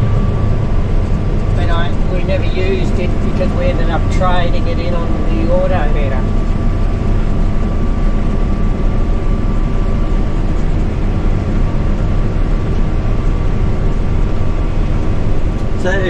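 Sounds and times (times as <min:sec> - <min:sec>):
combine harvester drone: 0:00.0 - 0:16.0
faint machine whine: 0:00.0 - 0:16.0.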